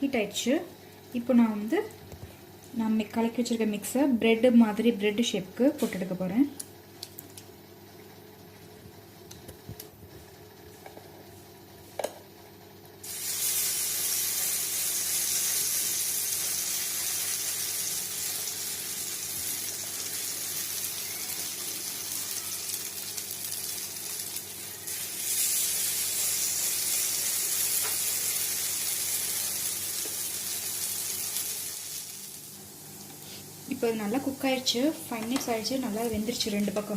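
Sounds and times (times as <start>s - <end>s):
batter sizzling in hot oil: 13.0s - 34.9s.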